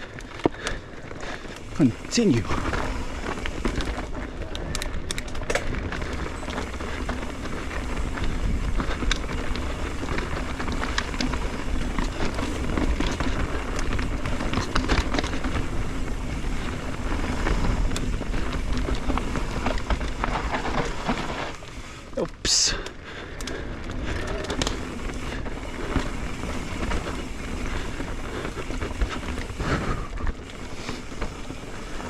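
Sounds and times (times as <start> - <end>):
tyres rolling over dirt: 0.0 - 32.0
wind rush on microphone: 1.6 - 22.0.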